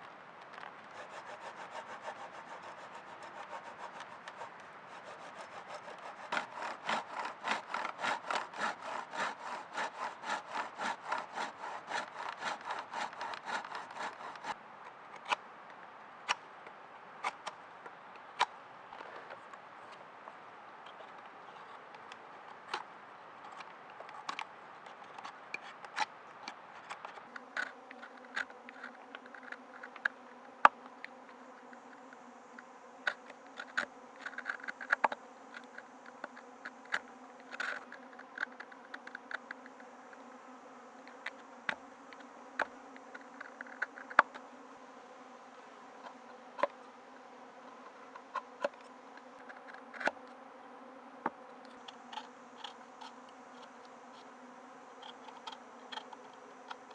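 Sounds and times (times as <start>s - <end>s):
insect buzzing: 0.9s - 14.6s, 26.6s - 56.9s.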